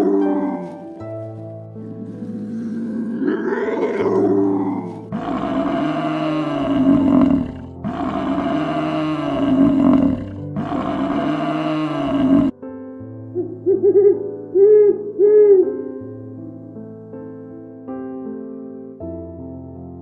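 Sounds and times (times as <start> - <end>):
large animal roaring: 0.0 - 0.8, 2.0 - 12.5
background music: 0.0 - 20.0.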